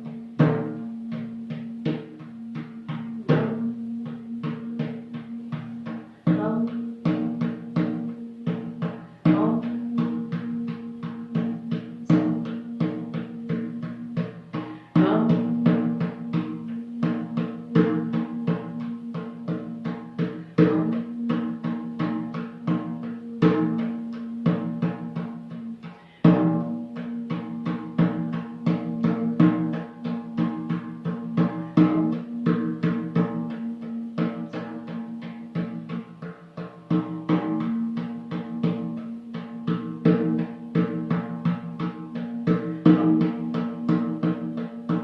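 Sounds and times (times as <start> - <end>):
rhythmic drumming: 0.0 - 45.0.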